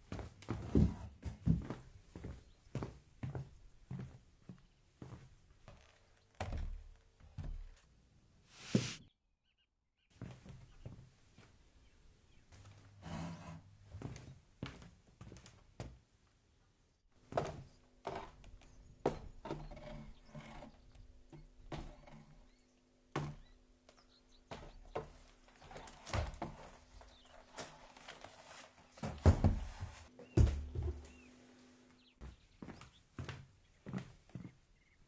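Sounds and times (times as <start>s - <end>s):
knocks and thumps: 29.1s - 31.3s.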